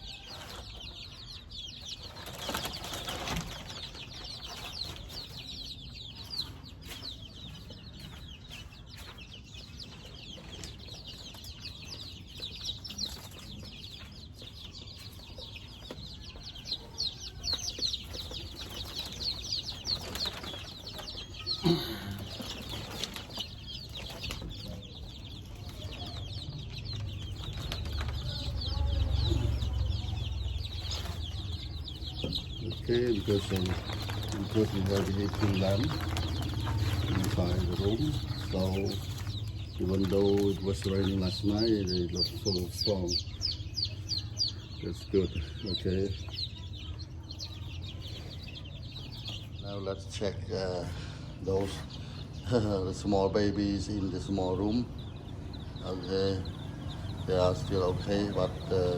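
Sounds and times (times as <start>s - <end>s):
chicks peeping: 0.0s - 58.9s
low rumble: 25.0s - 40.2s.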